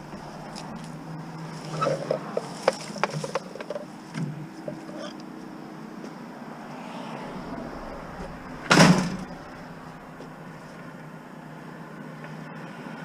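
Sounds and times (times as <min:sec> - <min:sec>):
steady low hum: 0:06.6 - 0:11.0
loud bang with ring-out: 0:08.5 - 0:09.7.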